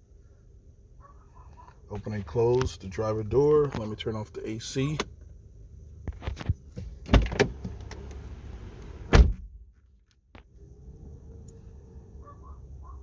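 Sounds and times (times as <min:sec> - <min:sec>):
car door latch clicks: 0:06.8 - 0:08.3, 0:09.1 - 0:09.5
car door slamming: 0:06.8 - 0:09.6.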